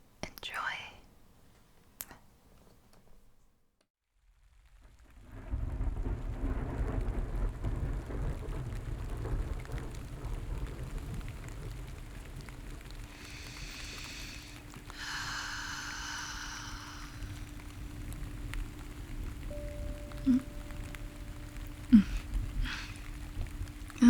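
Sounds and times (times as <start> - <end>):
steady rain: 4.2 - 24.0
deep low rumble: 5.5 - 24.0
faint steady low tone: 13.2 - 24.0
high multi-tone sounds: 19.5 - 22.7.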